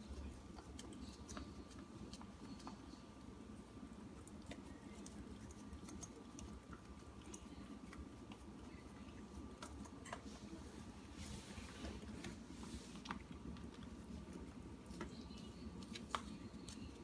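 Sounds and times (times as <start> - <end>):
dog licking and eating: 0.0 - 10.6.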